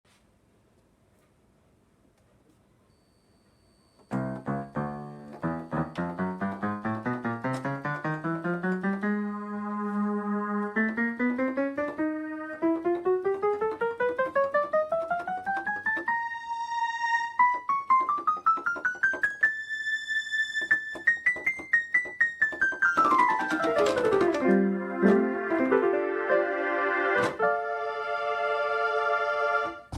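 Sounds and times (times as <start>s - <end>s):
electronic keyboard notes: 4.1s - 29.9s.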